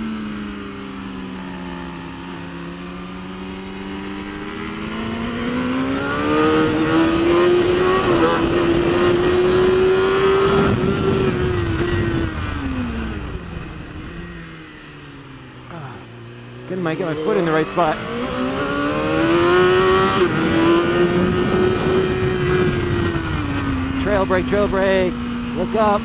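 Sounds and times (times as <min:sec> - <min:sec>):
motorcycle engine revving: 0:00.0 - 0:26.0
wind rushing: 0:17.0 - 0:24.0.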